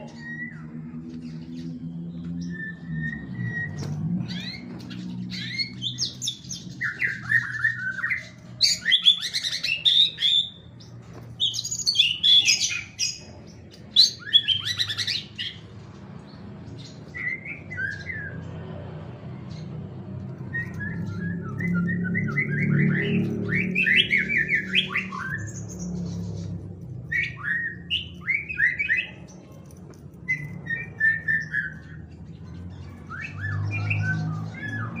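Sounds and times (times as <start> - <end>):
songbird singing: 0.0 - 35.0.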